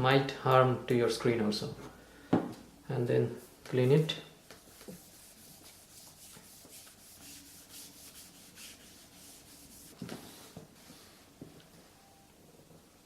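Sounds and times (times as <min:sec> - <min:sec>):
cloth wiping a screen: 0:03.4 - 0:11.4.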